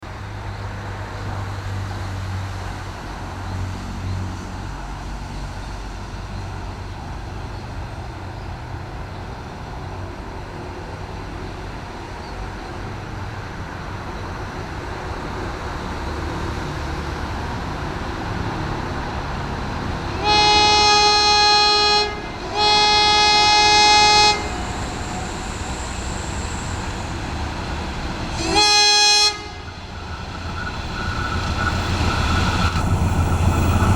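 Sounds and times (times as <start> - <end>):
train rumble: 0.0 - 33.9
shrill locomotive horn blasts: 20.0 - 32.8.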